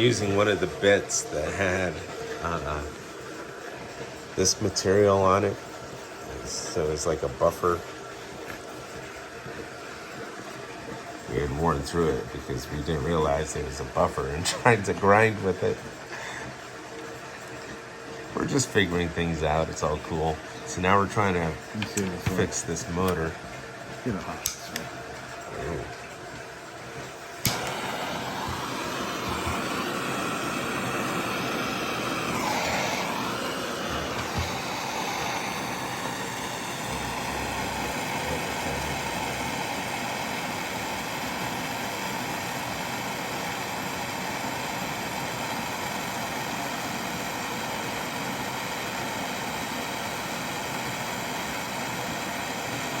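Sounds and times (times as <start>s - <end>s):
grinding machine motor whine: 0.0s - 15.8s, 17.0s - 23.4s, 25.4s - 53.0s.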